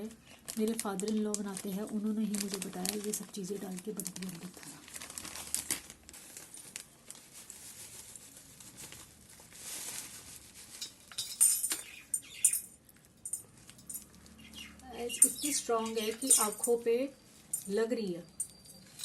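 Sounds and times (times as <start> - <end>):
faint rustling of crystals: 0.0 - 19.0
crystals clinking against glass: 10.8 - 14.3, 15.1 - 19.0.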